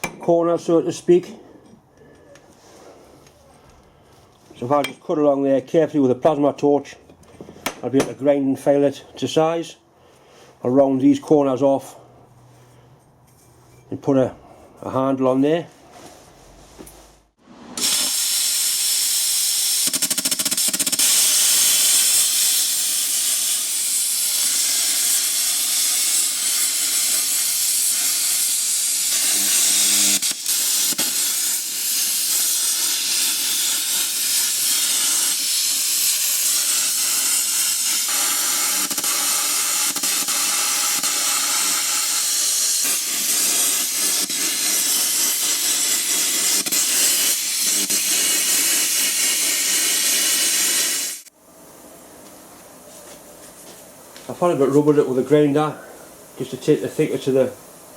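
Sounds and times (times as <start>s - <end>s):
plasma cutter hissing: 17.8s - 51.3s.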